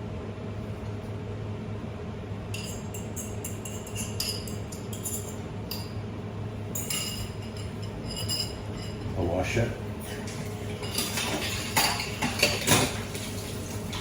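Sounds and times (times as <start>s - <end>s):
range hood fan hum: 0.0s - 14.0s
metal fork clinking against a bowl: 2.5s - 6.0s, 6.7s - 9.1s.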